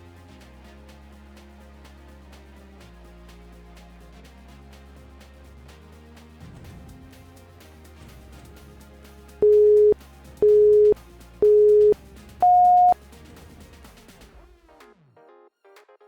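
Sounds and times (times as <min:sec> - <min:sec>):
higher timer beep: 0:09.4 - 0:13.0
timer beeps: 0:09.4 - 0:13.0.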